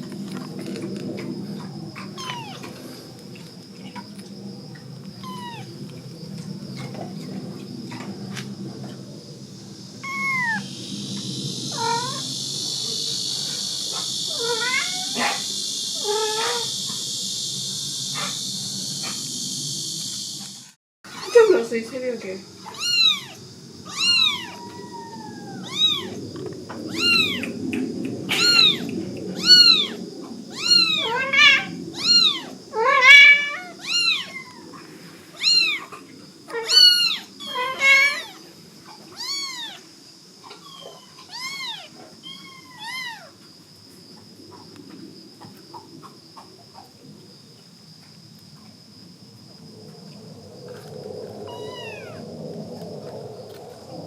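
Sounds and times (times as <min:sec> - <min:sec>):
kittens mewing: 0:02.1 - 0:02.7, 0:05.2 - 0:05.7, 0:10.0 - 0:10.6, 0:11.7 - 0:13.0, 0:13.9 - 0:16.7, 0:22.6 - 0:26.2, 0:26.8 - 0:27.6, 0:28.3 - 0:34.8, 0:35.4 - 0:38.4, 0:39.1 - 0:39.8, 0:40.5 - 0:43.3, 0:51.5 - 0:52.2.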